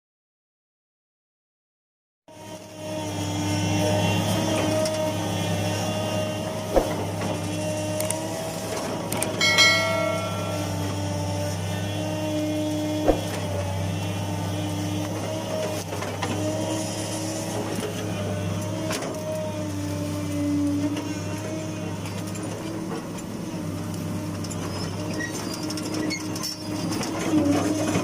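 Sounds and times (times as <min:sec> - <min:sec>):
excavator diesel engine running: 0:02.8 - 0:28.0
metallic clang: 0:09.4 - 0:11.3
wavering hydraulic whine: 0:09.4 - 0:14.0.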